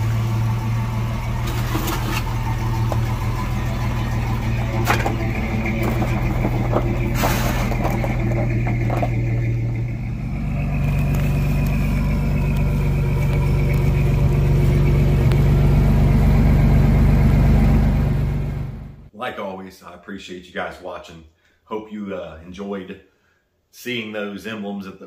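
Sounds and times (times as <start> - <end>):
pickup engine running: 0.0 - 19.1.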